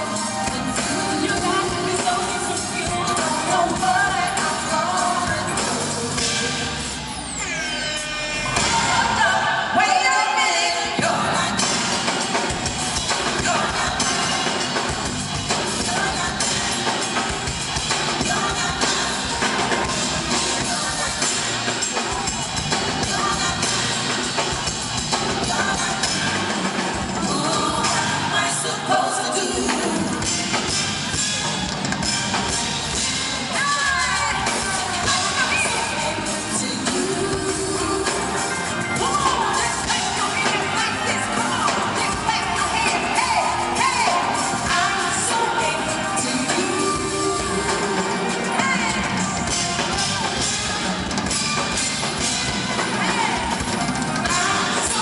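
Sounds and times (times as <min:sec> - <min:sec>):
drum kit beat: 0:00.0 - 0:07.1, 0:11.0 - 0:28.4, 0:29.1 - 0:55.0
crowd voices: 0:00.0 - 0:55.0
live band music: 0:00.0 - 0:55.0
person singing: 0:33.4 - 0:50.4.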